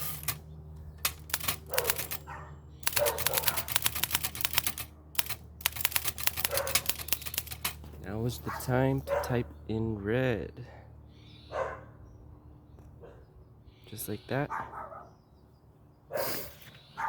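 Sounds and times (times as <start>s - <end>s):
manual typewriter keystroke clicks: 0.0s - 0.4s, 1.0s - 7.9s
rapid typing on typewriter: 0.0s - 0.4s, 1.0s - 7.9s.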